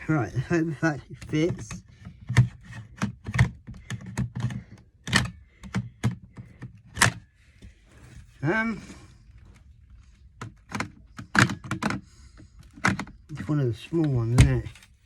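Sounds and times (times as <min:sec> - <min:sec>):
plastic battery knocking and clacking: 0:00.8 - 0:07.2, 0:10.4 - 0:14.8.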